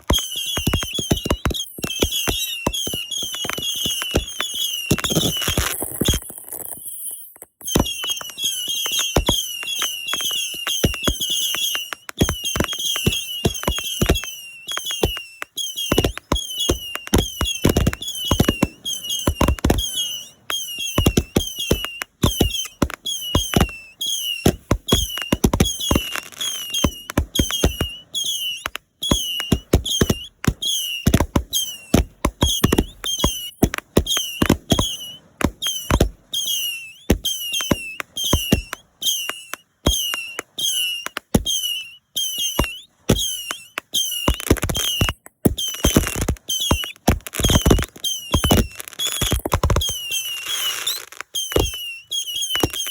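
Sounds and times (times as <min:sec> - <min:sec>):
high chirping tone: 0:00.0 - 0:06.2, 0:06.9 - 0:52.9
fireworks bursting: 0:00.0 - 0:52.9.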